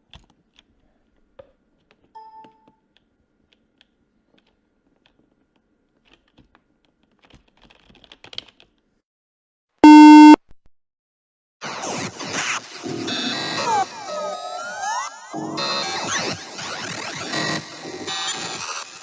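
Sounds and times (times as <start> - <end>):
electronic error buzzer: 9.8 - 10.4.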